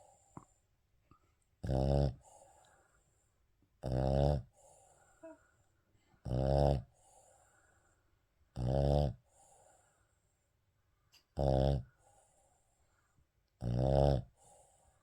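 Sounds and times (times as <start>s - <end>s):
dog snoring: 1.6s - 2.5s, 3.8s - 5.4s, 6.2s - 7.2s, 8.5s - 9.6s, 11.4s - 12.4s, 13.6s - 14.8s
soft breathing: 2.2s - 3.6s, 4.5s - 6.2s, 6.9s - 8.3s, 9.3s - 11.2s, 14.4s - 15.0s.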